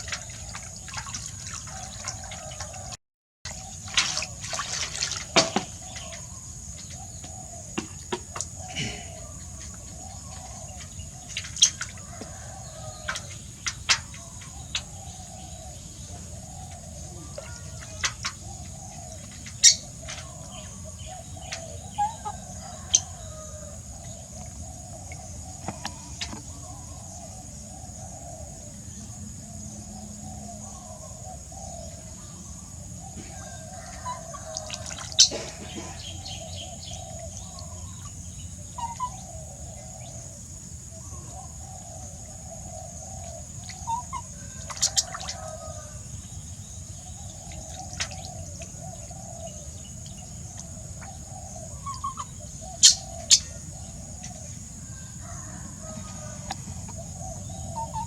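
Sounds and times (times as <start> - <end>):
birds chirping: 3.5 - 58.0
fowl clucking: 21.9 - 23.2, 33.2 - 36.3, 51.8 - 53.5.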